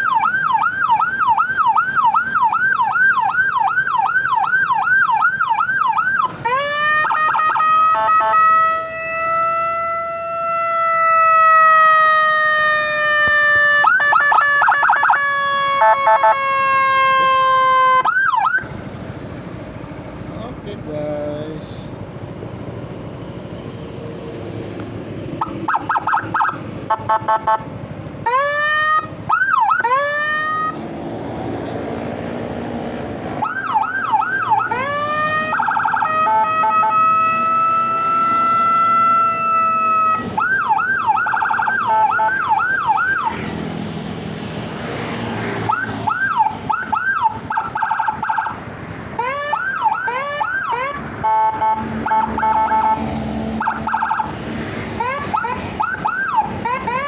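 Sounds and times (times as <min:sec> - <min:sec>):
electronic siren cycling tones: 0:25.4 - 0:27.6, 0:28.3 - 0:30.8, 0:33.4 - 0:43.4, 0:49.3 - 0:54.3.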